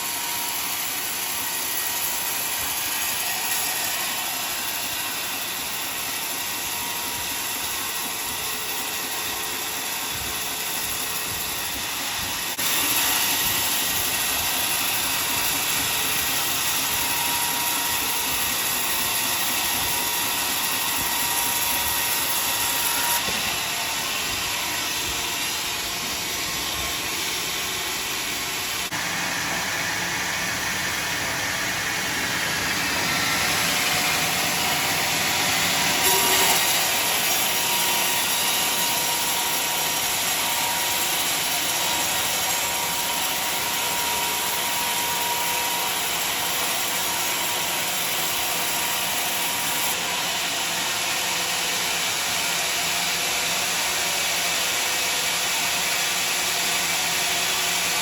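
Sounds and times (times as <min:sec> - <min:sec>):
sawmill saw cutting log: 0:00.0 - 0:58.0.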